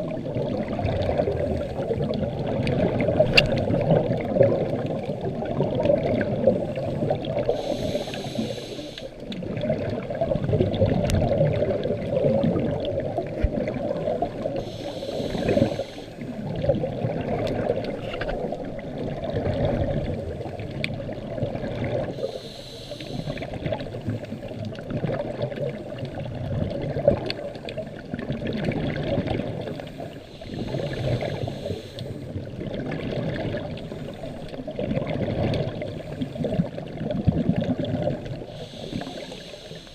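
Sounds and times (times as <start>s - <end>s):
water and bubbles: 0.0s - 39.9s
diver breathing hiss: 6.6s - 9.2s, 14.4s - 16.4s, 22.1s - 24.5s, 29.7s - 32.4s, 33.8s - 34.6s, 38.4s - 39.9s.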